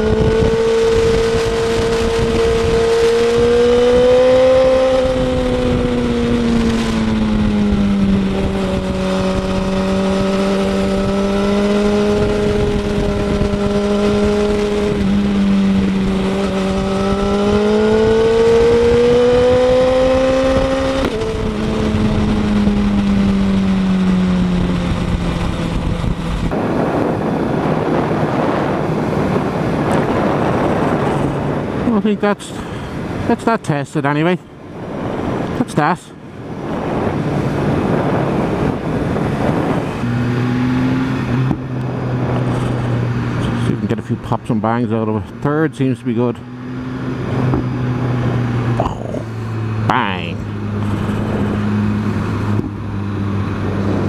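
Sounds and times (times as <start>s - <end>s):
motorcycle engine running: 0.0s - 31.6s, 46.2s - 54.0s.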